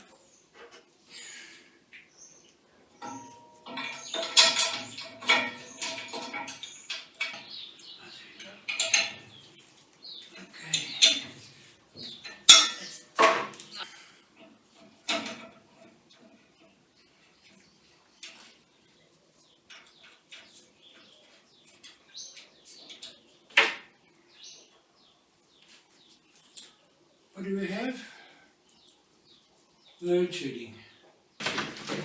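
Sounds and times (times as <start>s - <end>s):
metallic ringing: 3.0s - 7.7s, 12.4s - 12.9s
metal parts clinking: 3.0s - 9.7s, 12.1s - 13.0s.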